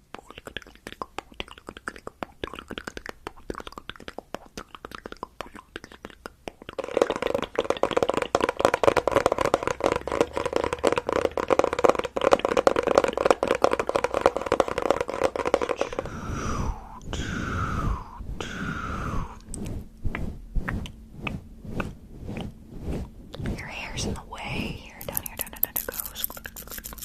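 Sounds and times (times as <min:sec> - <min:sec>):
crackling and scratching on microphone: 0:00.0 - 0:27.0
short falling swishes: 0:15.9 - 0:24.3.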